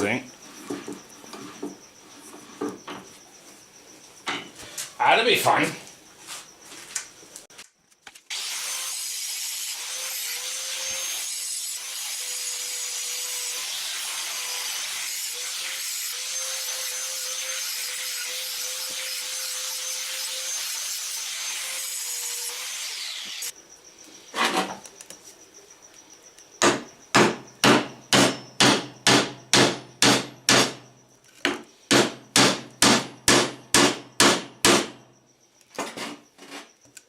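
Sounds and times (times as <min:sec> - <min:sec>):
power tool running: 0:08.3 - 0:23.5.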